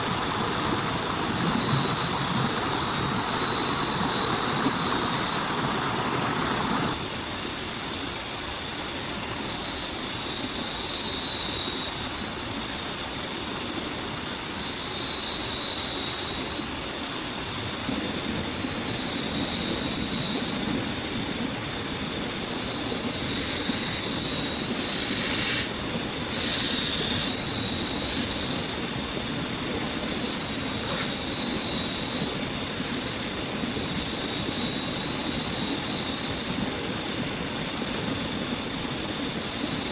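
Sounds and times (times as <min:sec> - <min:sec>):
high-pitched whine: 0:09.7 - 0:39.9.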